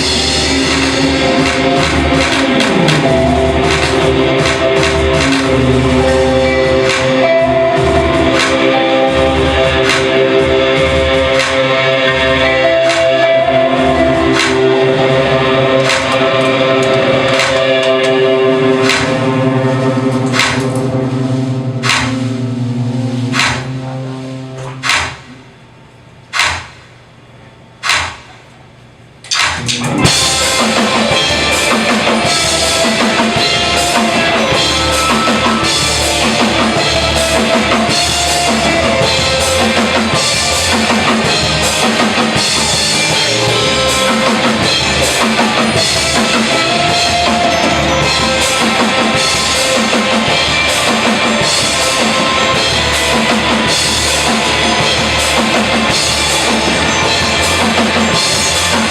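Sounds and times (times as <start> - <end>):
rock band playing: 0.0 - 25.4, 29.6 - 58.9
sharp hits: 0.0 - 25.7, 26.3 - 27.0.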